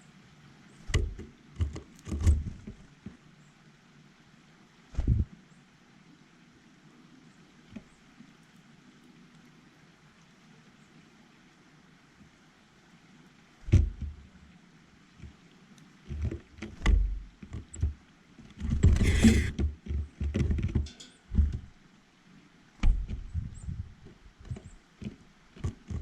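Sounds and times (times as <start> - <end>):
birds knocking and pecking: 0.8 - 3.2, 13.6 - 14.3, 16.0 - 21.8, 22.8 - 26.0
brief rustle: 18.6 - 19.6.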